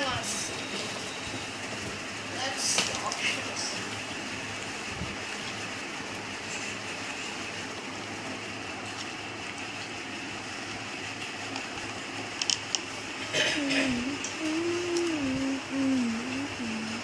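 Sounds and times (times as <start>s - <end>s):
faint low hum: 8.7s - 17.0s.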